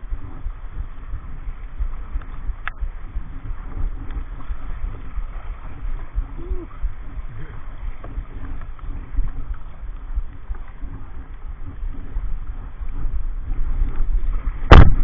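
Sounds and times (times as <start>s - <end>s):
low rumbling thumps: 0.0s - 15.0s
river water noise: 0.0s - 15.0s.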